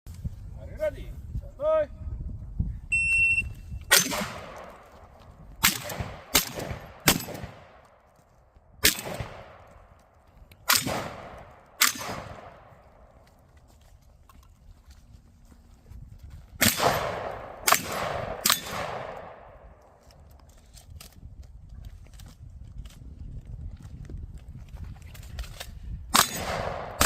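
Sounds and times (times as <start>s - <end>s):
shot timer beep: 2.9s - 3.8s
shotgun blasts: 3.9s - 7.9s, 8.8s - 9.8s, 10.6s - 13.1s, 16.6s - 19.8s, 26.1s - 27.0s.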